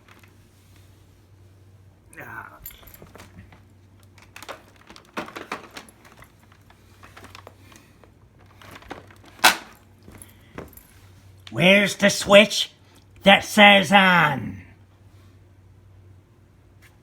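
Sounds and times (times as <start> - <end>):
low steady hum: 0.0 - 17.0
clicks and knocks handling vacuum: 3.0 - 10.8.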